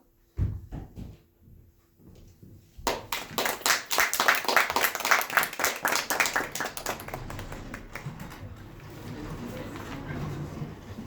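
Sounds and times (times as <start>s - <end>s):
audience applauding: 2.9s - 10.1s.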